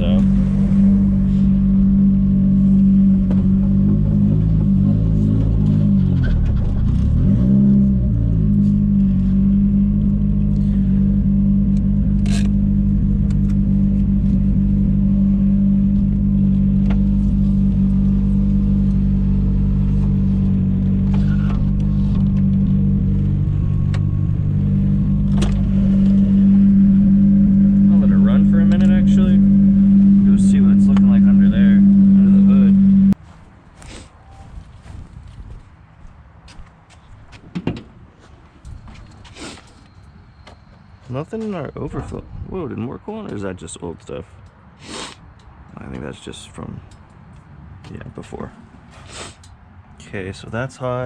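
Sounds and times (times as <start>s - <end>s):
car engine running: 0.0s - 33.2s.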